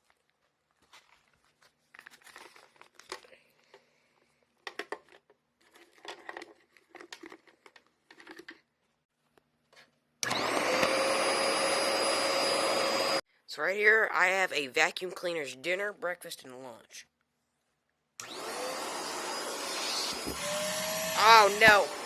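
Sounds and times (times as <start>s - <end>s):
paper bag crinkling and rustling: 0.0s - 3.3s
vacuum cleaner motor whine: 10.2s - 13.2s, 18.2s - 22.0s.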